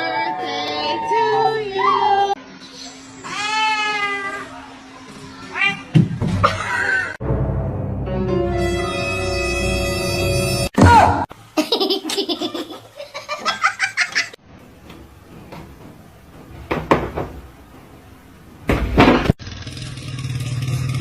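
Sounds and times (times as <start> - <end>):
laughter: 6.4 - 7.2, 11.6 - 14.4.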